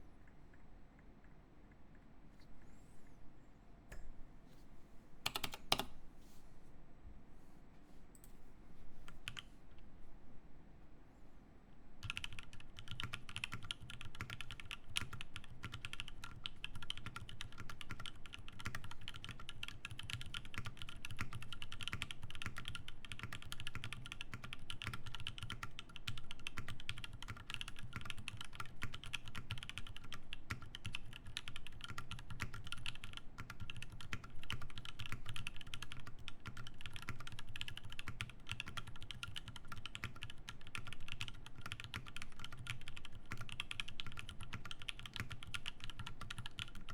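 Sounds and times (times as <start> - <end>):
fast mechanical keyboard typing: 5.3 - 5.9, 12.0 - 46.9.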